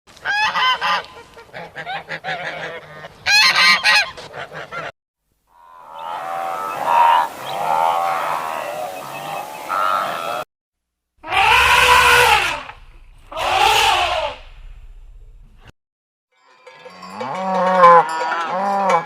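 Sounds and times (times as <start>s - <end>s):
group of birds calling: 5.6s - 10.4s, 11.2s - 14.6s
farm birds calling harshly: 5.7s - 10.4s, 11.2s - 14.6s.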